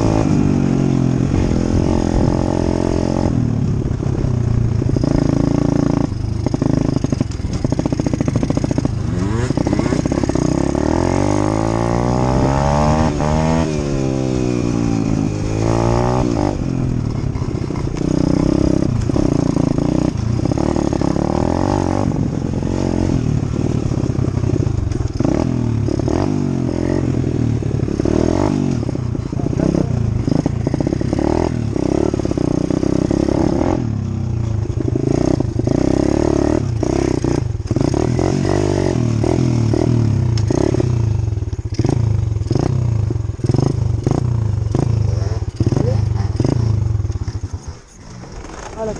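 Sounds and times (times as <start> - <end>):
dirt bike engine revving: 0.0 - 4.2, 4.8 - 34.0, 34.6 - 48.9
knocks and clatter: 45.5 - 48.9.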